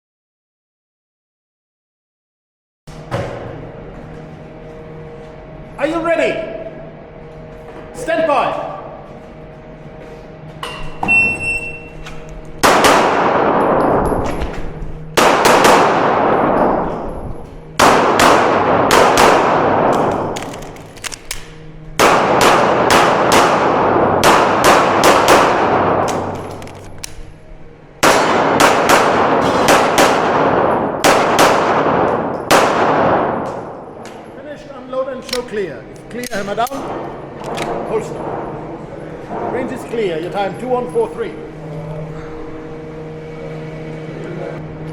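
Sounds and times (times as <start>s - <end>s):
shot timer beep: 11.0s - 12.0s
handgun shots echoing: 17.8s - 27.3s, 28.0s - 34.2s.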